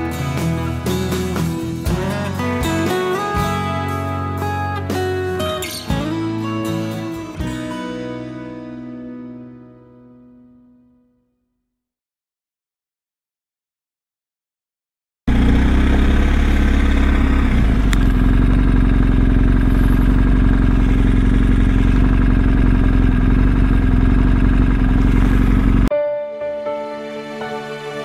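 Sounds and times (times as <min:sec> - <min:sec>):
music: 0:00.0 - 0:11.7, 0:25.9 - 0:28.0
motorcycle engine running: 0:15.3 - 0:25.9.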